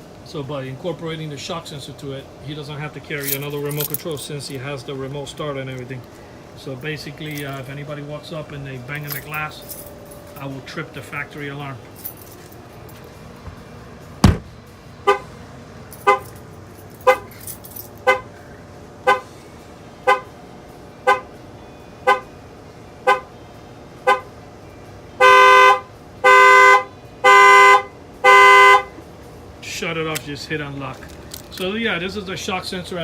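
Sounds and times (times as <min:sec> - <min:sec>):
car alarm horn honking: 0:15.0 - 0:15.3, 0:16.0 - 0:16.3, 0:17.0 - 0:17.4, 0:18.0 - 0:18.4, 0:19.0 - 0:19.3, 0:20.0 - 0:20.4, 0:21.0 - 0:21.4, 0:22.0 - 0:22.4, 0:23.0 - 0:23.4, 0:24.0 - 0:24.4, 0:25.1 - 0:29.0.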